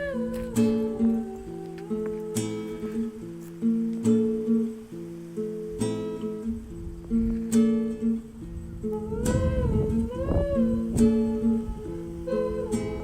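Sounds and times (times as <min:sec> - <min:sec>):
person singing: 0:00.0 - 0:03.2, 0:08.8 - 0:13.0
acoustic guitar strumming: 0:00.0 - 0:13.0.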